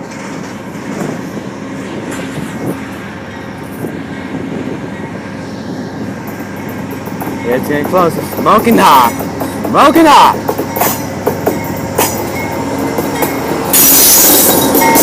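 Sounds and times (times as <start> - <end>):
locomotive engine running: 0.0 - 15.0
rumble of rolling train cars: 0.0 - 15.0
wheels clicking on rails: 6.3 - 15.0.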